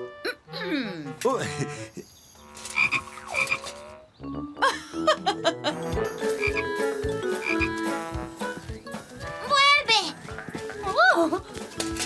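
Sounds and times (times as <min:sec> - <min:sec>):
cartoon frog croaking: 0:02.4 - 0:04.1, 0:06.4 - 0:06.7, 0:07.4 - 0:07.7.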